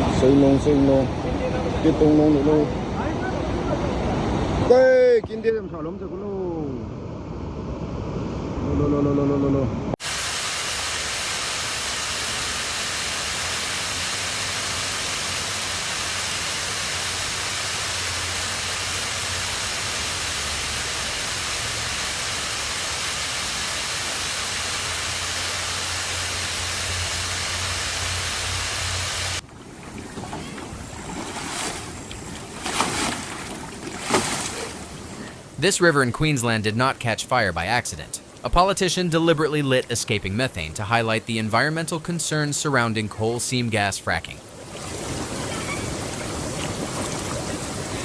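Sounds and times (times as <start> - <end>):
water rushing: 10.0 - 48.0.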